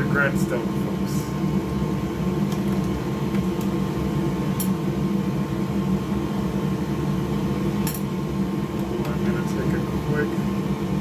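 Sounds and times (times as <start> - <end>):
fan running: 0.0 - 11.0.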